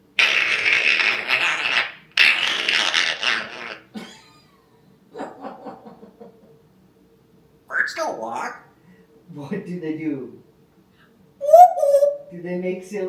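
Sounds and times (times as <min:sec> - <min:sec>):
parrot screeching: 0:07.7 - 0:08.7, 0:11.4 - 0:12.3.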